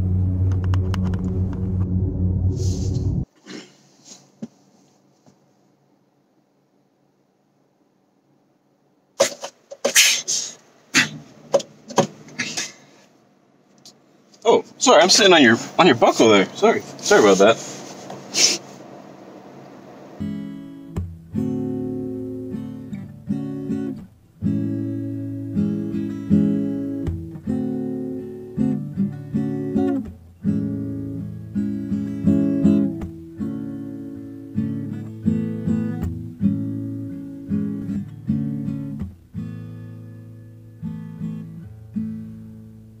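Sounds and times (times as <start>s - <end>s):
acoustic guitar strummed chords: 0.0s - 2.9s, 20.2s - 43.0s.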